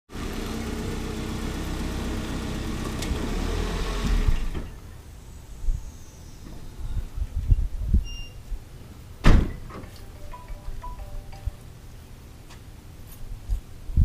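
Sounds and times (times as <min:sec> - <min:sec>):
engine-like hum: 0:00.1 - 0:07.3
thump: 0:09.2 - 0:09.9.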